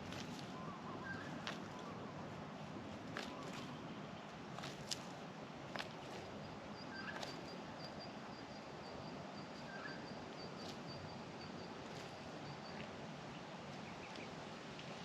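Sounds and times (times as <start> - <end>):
light taps and clicks in hay: 0.0 - 1.9, 3.0 - 6.4
bird chirps: 6.8 - 8.0, 9.5 - 11.7.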